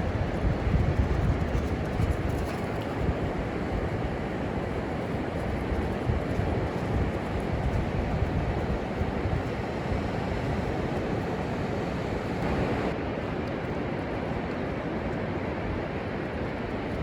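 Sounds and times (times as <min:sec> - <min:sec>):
wind buffeting microphone: 0:00.0 - 0:14.4
surf on beach: 0:03.3 - 0:14.1.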